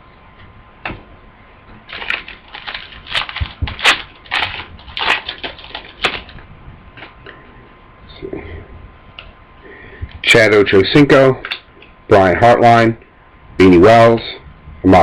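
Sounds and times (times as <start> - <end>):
foil wrapper tearing and crinkling: 1.9 - 6.4.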